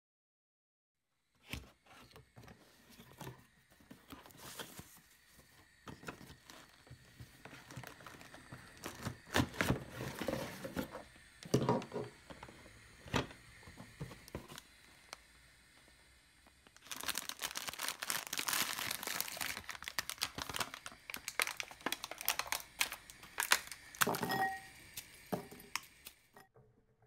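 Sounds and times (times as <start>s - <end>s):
packaging rustling: 3.0s - 11.1s, 16.6s - 25.5s
kitchen clicks and knocks: 24.0s - 24.7s.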